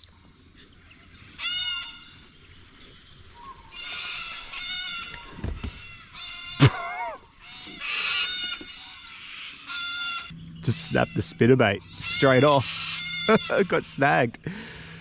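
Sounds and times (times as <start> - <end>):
waterfowl honking: 3.6 - 14.2.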